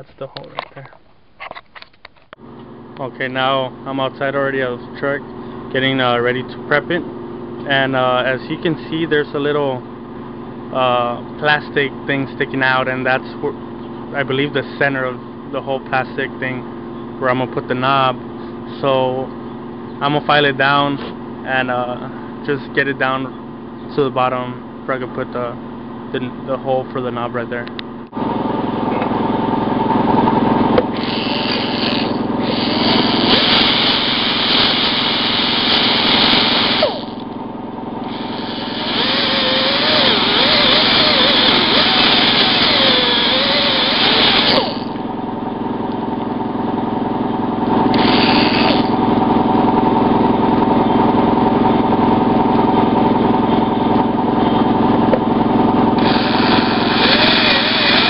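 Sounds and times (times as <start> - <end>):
power tool grinding plastic: 30.9 - 37.4, 38.0 - 45.1, 47.9 - 49.1, 56.0 - 58.0.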